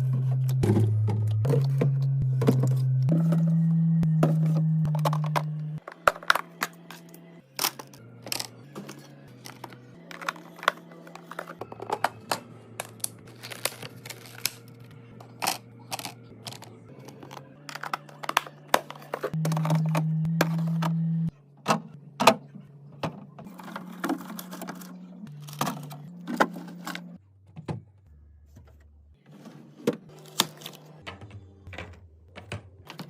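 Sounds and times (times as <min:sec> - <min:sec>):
packaging clicking and crinkling: 0:12.8 - 0:19.9.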